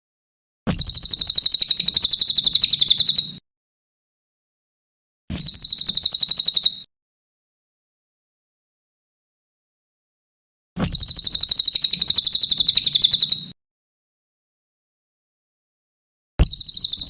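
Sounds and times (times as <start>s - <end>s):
songbird trilling: 0.7s - 3.4s, 5.4s - 6.8s, 10.8s - 13.5s, 16.4s - 17.0s.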